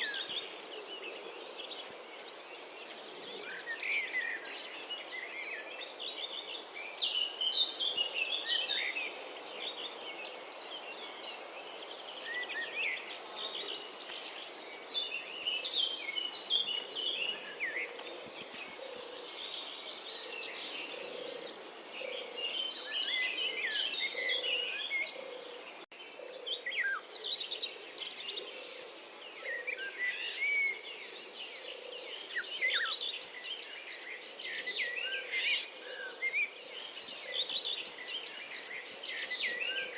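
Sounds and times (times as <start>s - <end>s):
robin singing: 0.0s - 39.9s.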